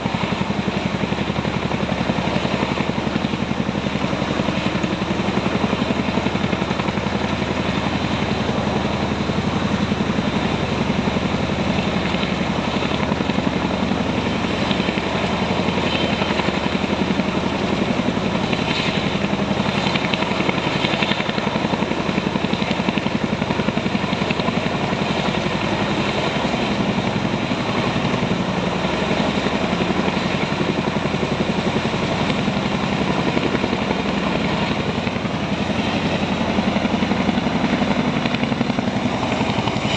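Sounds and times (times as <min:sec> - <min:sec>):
helicopter rotor beating: 0:00.0 - 0:39.9.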